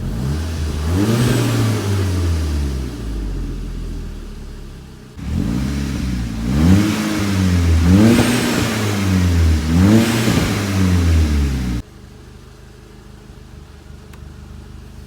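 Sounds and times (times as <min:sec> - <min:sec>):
car engine revving: 0:00.0 - 0:11.8
exhaust crackles and pops: 0:05.2 - 0:11.8.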